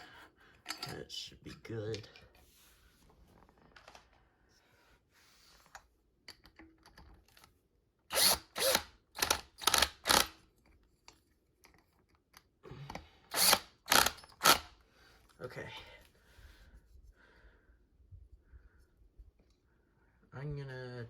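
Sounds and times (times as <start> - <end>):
power drill bursts: 8.1 - 10.4, 13.3 - 14.7.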